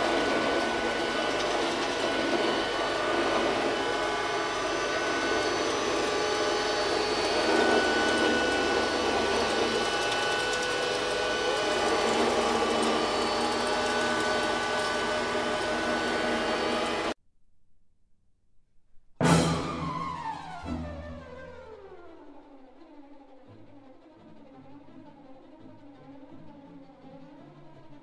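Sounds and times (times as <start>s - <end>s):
robot vacuum motor whine: 0.0s - 17.2s.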